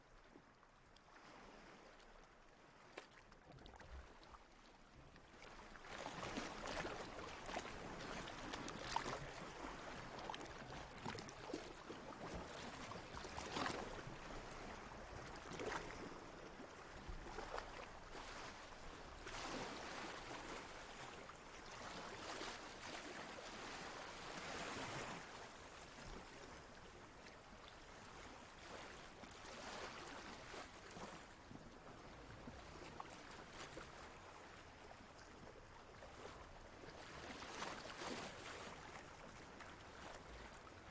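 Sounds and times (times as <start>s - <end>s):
water lapping and sloshing: 0.1s - 40.9s.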